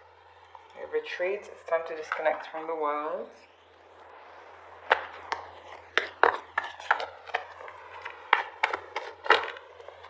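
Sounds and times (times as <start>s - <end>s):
cards clicking and tapping: 6.0s - 9.6s.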